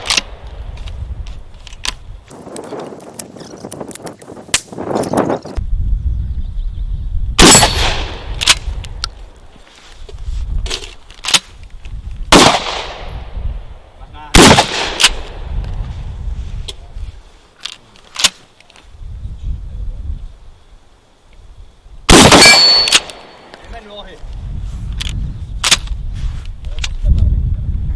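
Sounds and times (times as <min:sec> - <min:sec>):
loud gunshots with echoes: 0:07.4 - 0:08.3, 0:12.3 - 0:13.1, 0:14.3 - 0:15.3, 0:22.1 - 0:22.9.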